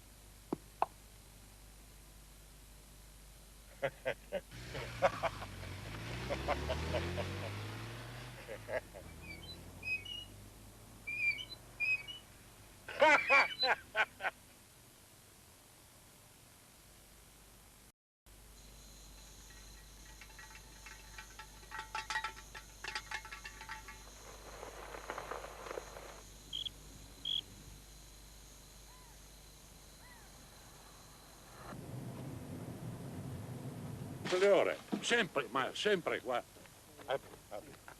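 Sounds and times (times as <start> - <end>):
high chirping squeaks: 9.1 - 10.3, 11.1 - 12.3
rustling: 19.1 - 27.4.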